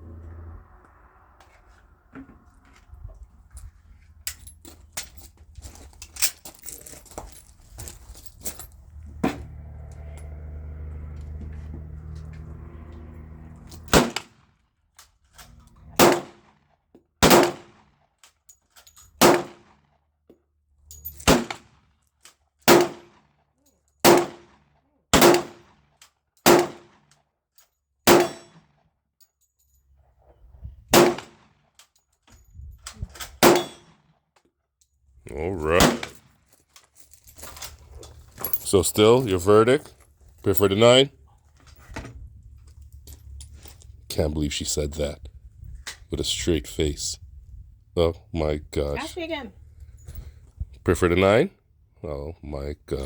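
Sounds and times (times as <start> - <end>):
handgun shots with ringing echo: 16.0 - 16.5, 17.2 - 17.8, 19.2 - 19.7, 21.3 - 21.6, 22.7 - 23.2, 24.0 - 24.6, 25.2 - 25.7, 26.4 - 26.9, 28.1 - 28.6, 30.9 - 31.4, 33.4 - 34.0, 35.8 - 36.2.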